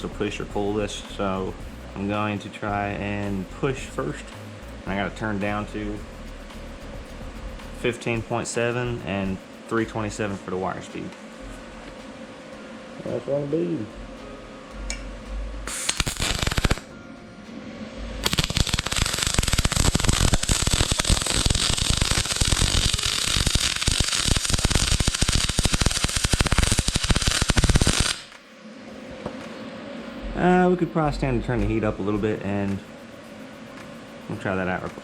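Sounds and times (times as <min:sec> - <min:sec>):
welding arc crackling: 0:00.0 - 0:10.4, 0:15.6 - 0:16.9, 0:18.2 - 0:28.4, 0:31.6 - 0:35.0.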